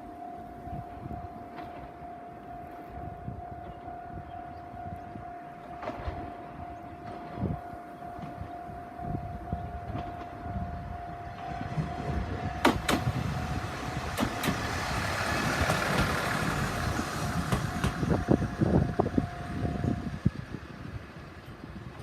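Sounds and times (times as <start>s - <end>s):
crossing alarm steady tone: 0.0s - 22.0s
railcar running noise: 0.0s - 22.0s
train wheels clicking over rail joints: 9.7s - 22.0s.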